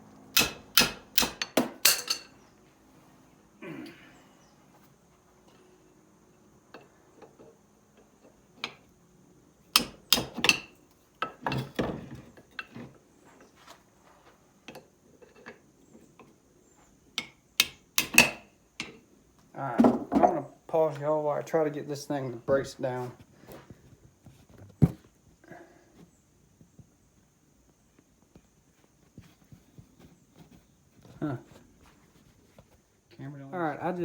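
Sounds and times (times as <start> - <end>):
metal tools knocking on metal: 0.4 - 2.4, 9.7 - 12.8.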